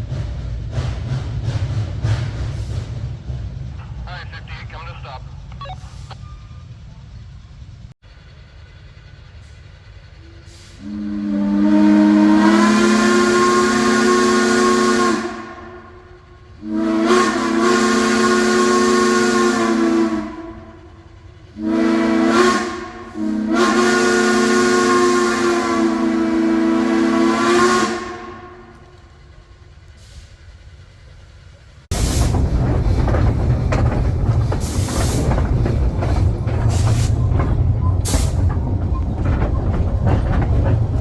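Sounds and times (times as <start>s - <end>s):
steam whistle blasts: 10.7s - 15.9s, 16.6s - 20.7s, 21.6s - 28.7s.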